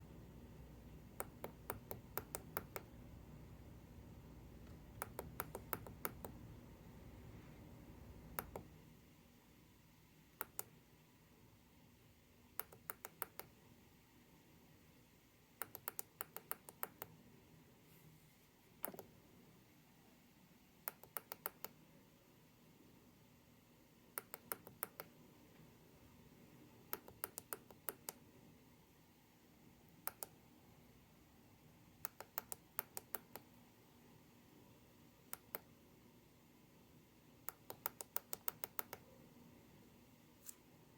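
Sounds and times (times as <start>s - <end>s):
low background hum: 0.0s - 40.9s
sharp tapping clicks: 1.2s - 2.9s, 4.6s - 6.4s, 26.9s - 28.2s, 37.5s - 39.0s.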